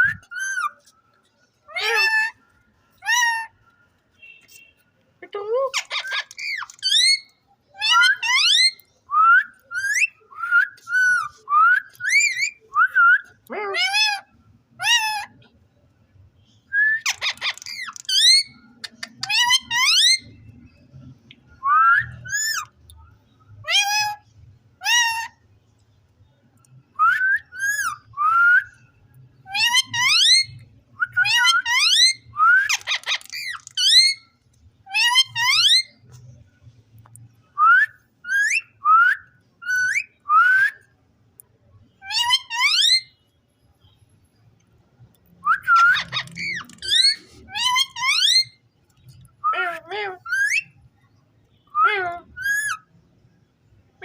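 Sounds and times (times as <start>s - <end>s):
parakeet whistles and chirps: 0.0s - 0.8s, 5.8s - 13.4s, 16.7s - 20.4s, 21.5s - 22.7s, 26.9s - 28.9s, 29.5s - 34.3s, 34.9s - 36.0s, 37.6s - 40.9s, 42.0s - 43.2s, 45.4s - 48.6s, 49.4s - 50.8s, 51.6s - 52.9s.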